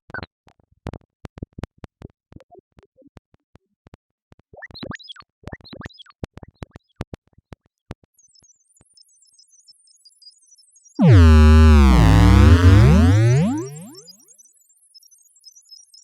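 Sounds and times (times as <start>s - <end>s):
chirping pitch sweeps: 11.0s - 14.0s
sharp electronic clicks and blips: 11.0s - 14.0s.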